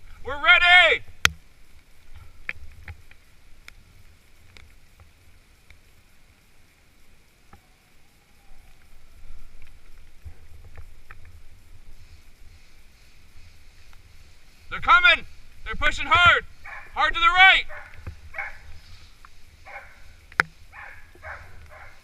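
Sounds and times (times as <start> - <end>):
wind rumble: 7.9 - 22.0.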